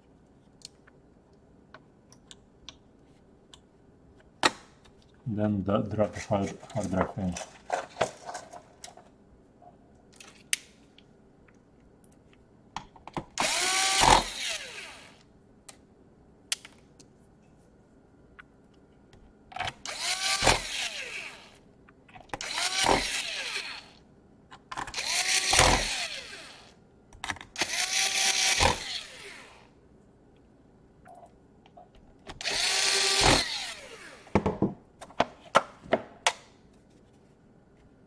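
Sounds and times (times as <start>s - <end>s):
electric screwdriver driving screws: 13.4s - 15.2s, 19.8s - 21.6s, 22.4s - 24.0s, 24.9s - 26.7s, 27.6s - 29.7s, 32.4s - 34.3s.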